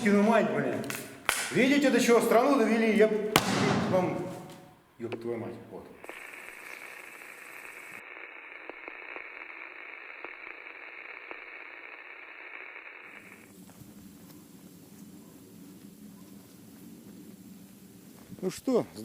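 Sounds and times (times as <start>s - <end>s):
radio static hiss with crackles: 5.3s - 15.0s.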